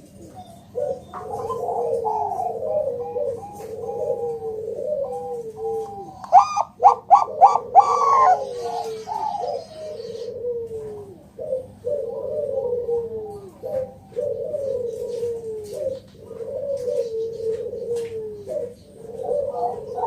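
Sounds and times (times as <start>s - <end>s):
dove cooing: 0.0s - 20.0s.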